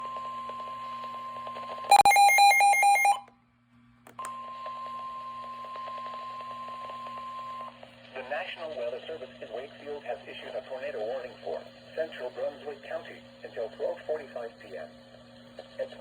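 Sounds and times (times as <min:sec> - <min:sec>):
steady alarm beep tone: 0:01.9 - 0:03.2
click: 0:04.0 - 0:04.4
faint radio static: 0:08.2 - 0:15.0, 0:15.7 - 0:16.0.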